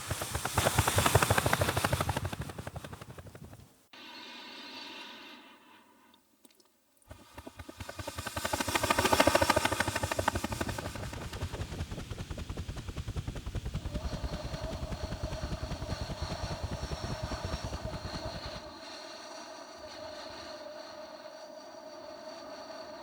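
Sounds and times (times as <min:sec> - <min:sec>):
electronic rattling pulse: 0:07.1 - 0:19.4.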